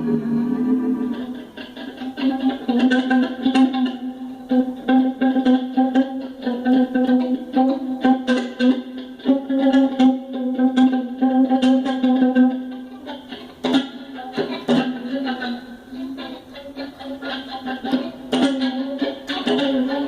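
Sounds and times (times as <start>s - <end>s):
low guitar note: 0.0s - 3.7s
guitar plucked notes: 0.0s - 20.0s.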